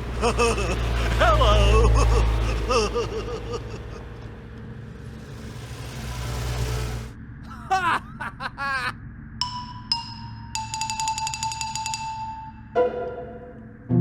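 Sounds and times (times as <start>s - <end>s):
cartoon engine rumbling: 0.0s - 9.6s.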